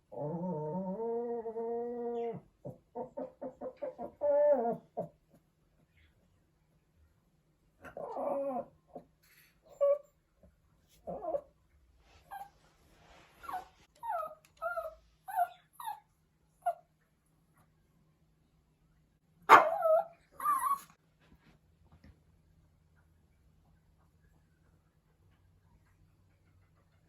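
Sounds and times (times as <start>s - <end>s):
puppy whimpering and whining: 0.2s - 5.1s, 7.9s - 9.0s, 9.6s - 10.2s, 11.0s - 11.5s, 12.2s - 12.6s, 13.4s - 16.8s, 19.7s - 21.0s.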